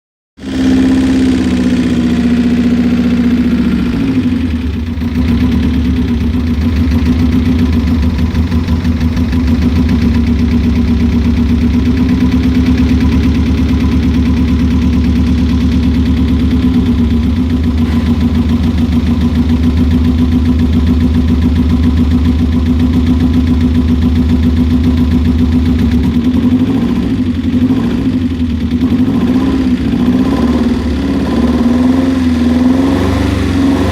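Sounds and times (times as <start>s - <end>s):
car engine idling: 0.4s - 32.6s.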